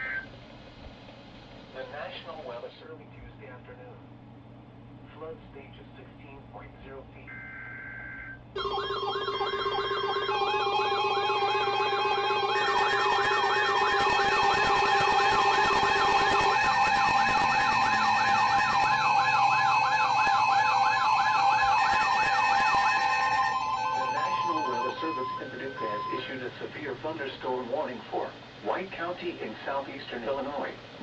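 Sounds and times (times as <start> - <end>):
warbling siren-like alarms: 7.6 - 26.5
steady alert tones: 8.6 - 26.4.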